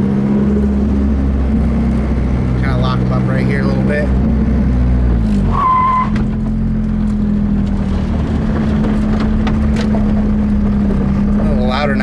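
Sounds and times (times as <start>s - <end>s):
car engine running at low revs: 0.0s - 12.0s
high tyre squeal: 5.4s - 6.3s.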